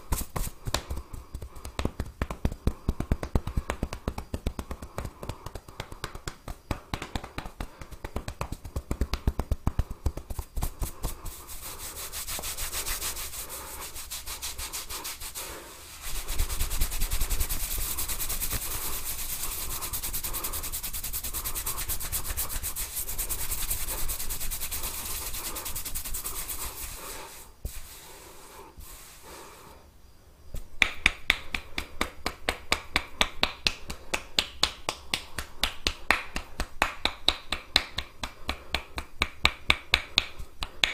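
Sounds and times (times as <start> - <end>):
fingers rubbing hair and scalp: 0.0 - 29.4.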